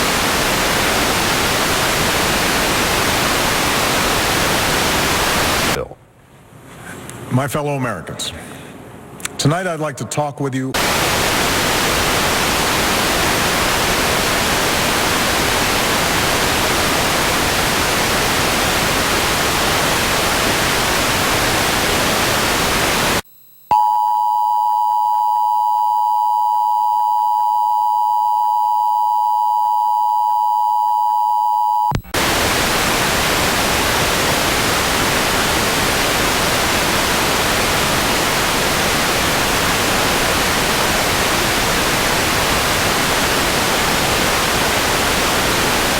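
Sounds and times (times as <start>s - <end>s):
television static hiss: 0.0s - 8.2s, 9.0s - 23.2s, 32.0s - 45.9s.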